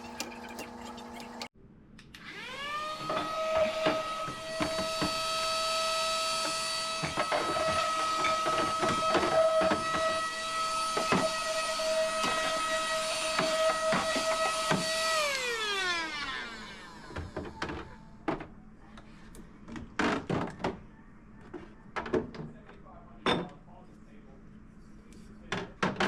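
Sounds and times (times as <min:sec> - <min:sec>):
small electric motor whining: 0:02.2 - 0:18.1.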